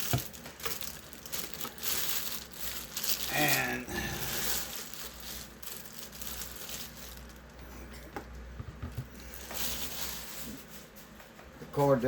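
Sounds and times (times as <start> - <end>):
plastic packaging crinkling: 0.0 - 7.9, 8.9 - 11.2
small knocks of handling: 8.1 - 9.2.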